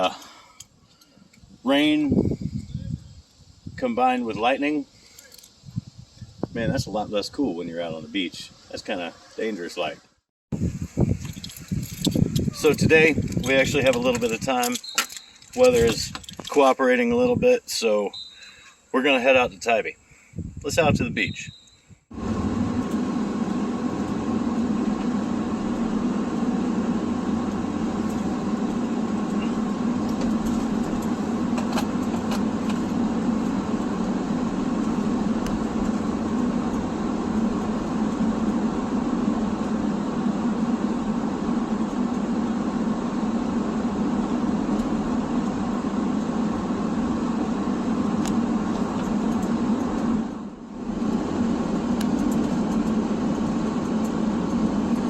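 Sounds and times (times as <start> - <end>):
car road and engine noise: 10.6 - 16.6, 22.0 - 55.0.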